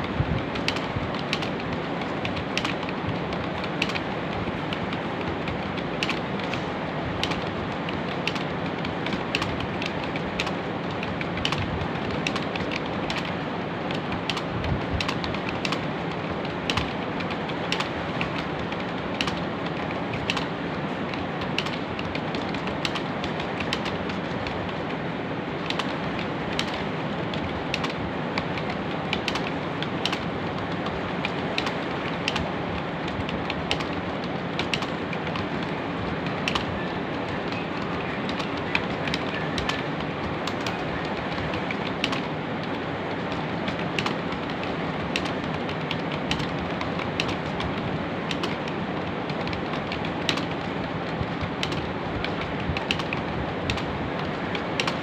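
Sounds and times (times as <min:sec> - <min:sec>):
keyboard key clicks: 0:00.0 - 0:06.6, 0:07.2 - 0:25.0, 0:25.6 - 0:55.0
steady background hiss: 0:00.0 - 0:55.0.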